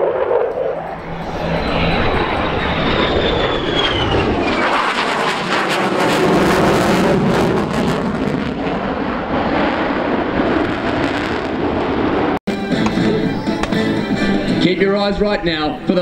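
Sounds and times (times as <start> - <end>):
jet engine roar: 0.0 - 16.0.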